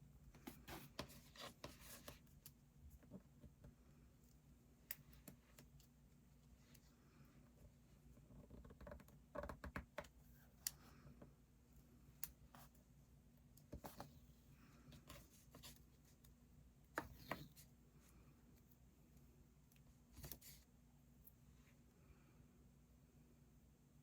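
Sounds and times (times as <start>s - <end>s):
low steady hum: 0.0s - 24.0s.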